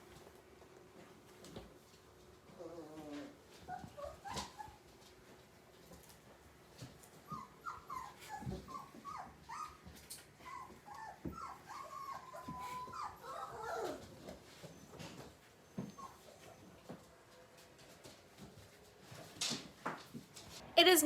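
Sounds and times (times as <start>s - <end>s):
puppy whining: 2.4s - 5.2s, 6.8s - 17.4s
puppies whimpering and squeaking: 2.5s - 5.1s, 7.0s - 17.0s.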